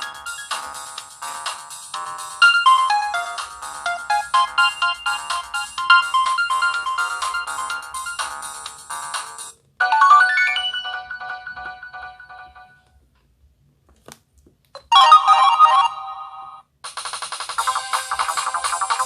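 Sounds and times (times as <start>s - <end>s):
melodic electronic ringtones: 0.0s - 1.3s, 2.0s - 9.0s, 9.8s - 12.8s.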